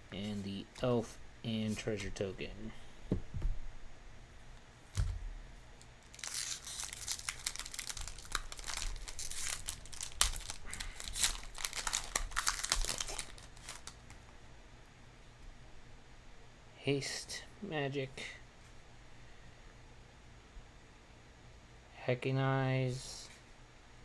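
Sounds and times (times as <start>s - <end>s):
soft thump: 3.1s - 3.6s
foil wrapper tearing and crinkling: 6.0s - 14.3s.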